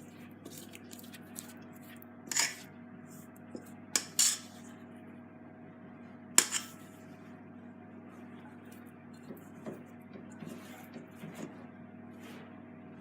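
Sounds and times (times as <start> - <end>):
kitchen utensils and bowls clattering: 2.3 - 2.6, 4.0 - 4.5, 6.4 - 6.8.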